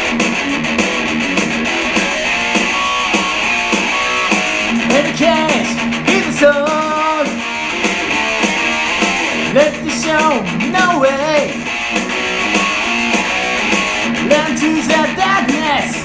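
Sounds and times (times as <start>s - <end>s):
rock song on guitars: 0.0s - 16.0s.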